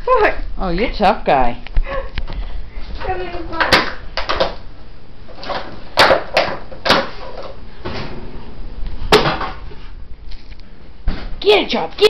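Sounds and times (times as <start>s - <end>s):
plastic bottle cracks and knocks: 5.4s - 7.2s, 9.1s - 9.6s
plastic crinkling: 10.2s - 10.7s.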